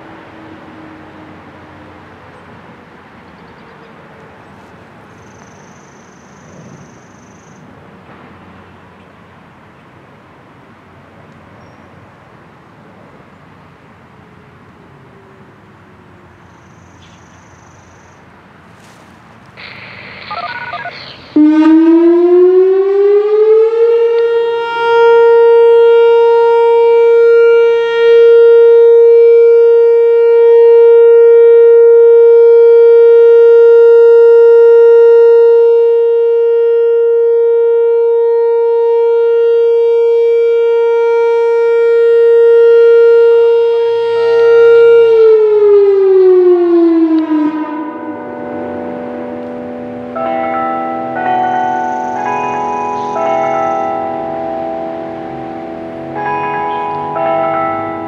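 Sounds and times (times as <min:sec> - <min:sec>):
electronic warning siren tone: 0:19.6 - 0:58.0.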